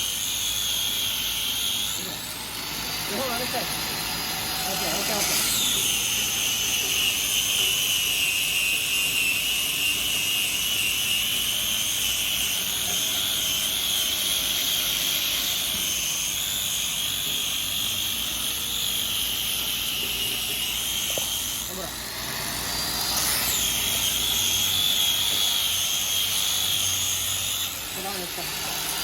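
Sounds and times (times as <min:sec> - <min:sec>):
power tool motor whining: 0:00.0 - 0:29.0.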